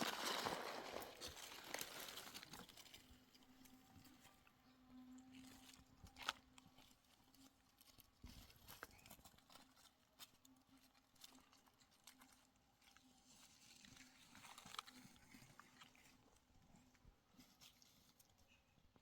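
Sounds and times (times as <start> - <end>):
soft rustling: 0.0 - 4.6.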